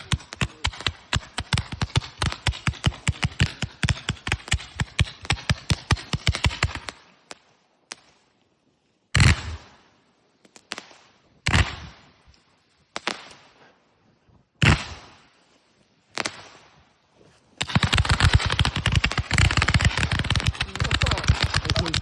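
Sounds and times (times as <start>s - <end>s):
firework reports: 0.0s - 7.0s, 17.7s - 22.0s
rapid firework pops: 0.0s - 8.3s, 9.2s - 12.2s, 12.9s - 13.7s, 14.6s - 15.4s, 16.1s - 16.8s, 17.6s - 22.0s.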